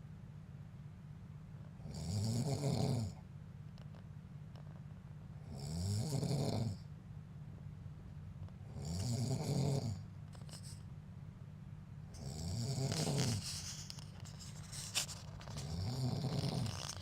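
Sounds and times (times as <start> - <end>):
man snoring: 1.8 - 3.2, 5.4 - 6.8, 8.7 - 10.0, 12.2 - 13.5, 15.6 - 17.0.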